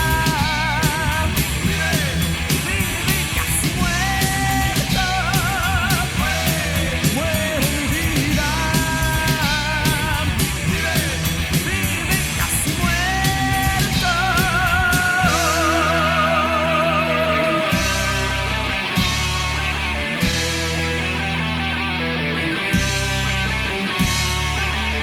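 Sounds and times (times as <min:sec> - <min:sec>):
heavy metal band playing: 0:00.0 - 0:25.0
wavering high guitar notes: 0:12.9 - 0:25.0.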